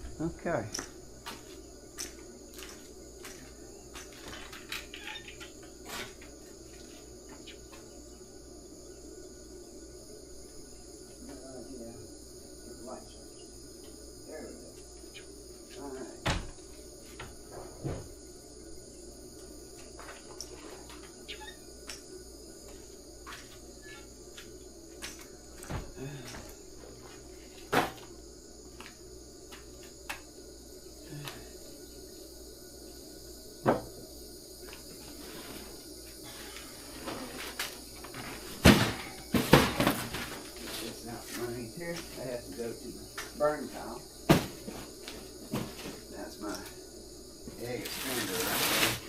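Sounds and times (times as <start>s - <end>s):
crickets chirping: 0.0s - 49.0s.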